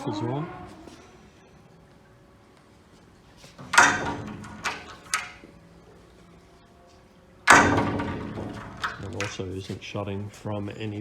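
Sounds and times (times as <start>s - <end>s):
glass gate clanking against latch: 3.6s - 5.5s, 7.5s - 9.5s
light latch clicks: 3.7s - 5.5s, 7.5s - 9.4s.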